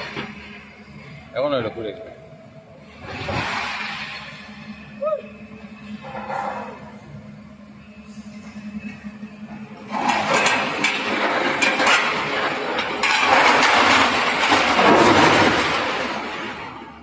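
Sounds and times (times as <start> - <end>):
excavator engine: 0.0 - 17.0
metal clanks and knocks: 9.8 - 17.0.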